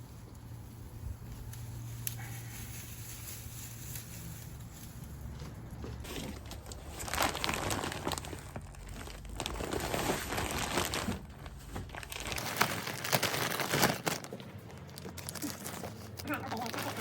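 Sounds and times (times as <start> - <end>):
crinkling and rustling: 0.0 - 17.0.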